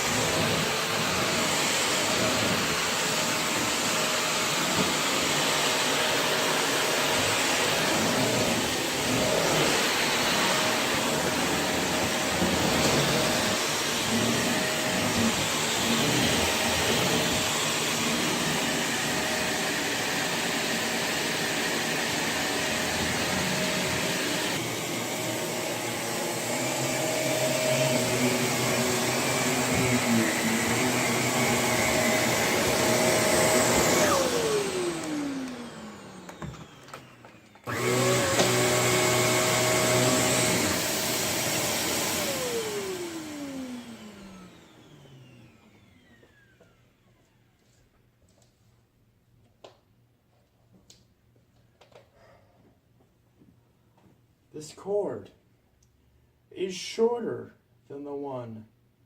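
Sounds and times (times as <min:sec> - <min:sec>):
upright vacuum running: 0:00.0 - 0:47.7
vacuum motor winding down: 0:22.4 - 0:47.1.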